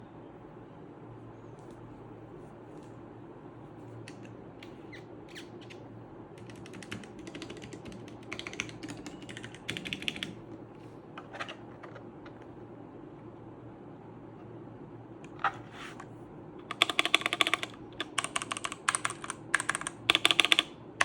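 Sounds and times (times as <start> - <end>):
mechanical keyboard typing: 6.4 - 10.4, 16.6 - 20.8.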